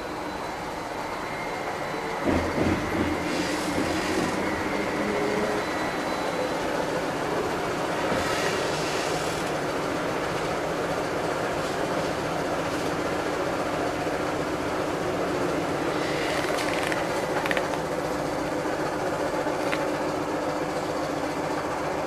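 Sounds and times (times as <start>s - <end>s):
trolleybus rumbling: 0.0s - 22.0s.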